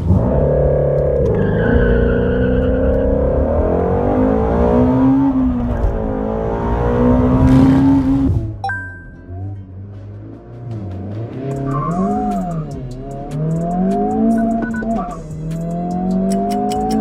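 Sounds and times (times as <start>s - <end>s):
car engine revving: 0.0s - 8.6s, 9.3s - 17.0s.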